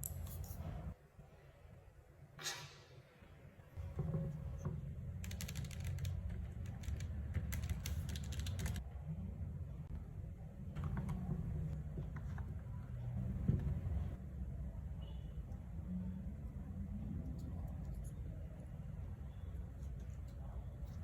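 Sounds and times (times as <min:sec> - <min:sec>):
mechanical keyboard typing: 0:05.2 - 0:08.8.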